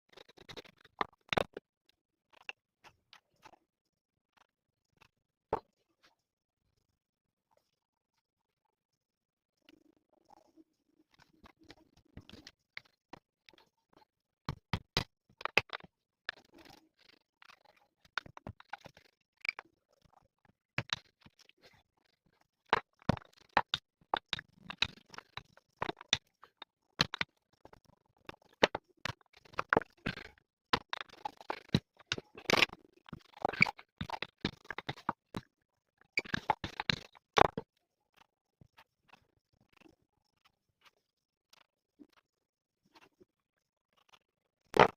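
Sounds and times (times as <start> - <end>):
utensils clicking and knocking: 28.4 - 35.2.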